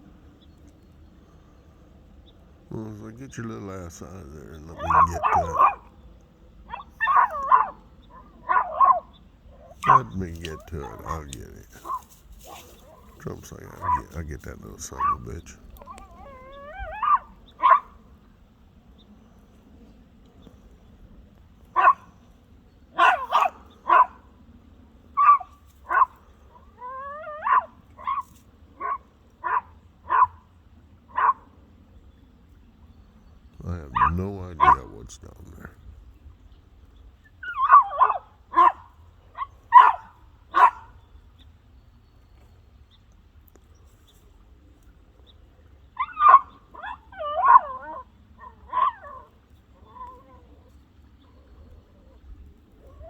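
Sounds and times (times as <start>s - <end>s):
dog whining: 4.8s - 5.8s, 6.7s - 9.1s, 15.8s - 17.9s, 37.4s - 38.8s, 46.0s - 50.6s
dog barking: 4.8s - 5.9s, 6.7s - 11.1s, 11.7s - 14.2s, 14.9s - 18.0s, 21.8s - 22.1s, 23.0s - 24.3s, 25.2s - 26.2s, 26.8s - 30.4s, 31.1s - 31.5s, 33.9s - 34.9s, 37.4s - 41.0s, 46.0s - 49.3s.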